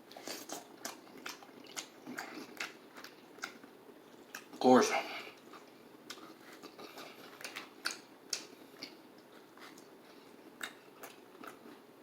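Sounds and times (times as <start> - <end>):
person chewing soft food: 0.0 - 12.0
wet mouth clicks and smacks: 0.2 - 4.6, 6.1 - 9.0.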